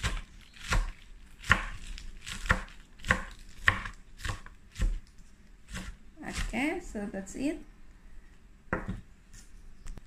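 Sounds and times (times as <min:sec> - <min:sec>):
knife chopping on cutting board: 0:00.0 - 0:05.0, 0:05.7 - 0:06.5.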